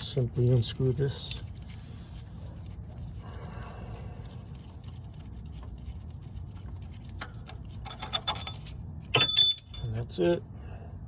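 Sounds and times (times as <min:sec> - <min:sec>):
low steady hum: 0:00.0 - 0:11.0
metal parts clicking and clinking: 0:07.2 - 0:10.0.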